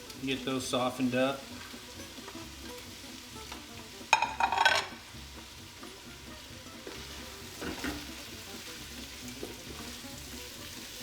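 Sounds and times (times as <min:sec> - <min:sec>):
onions sizzling in oil: 0:00.0 - 0:11.0
utensil clattering against pot: 0:04.1 - 0:05.0.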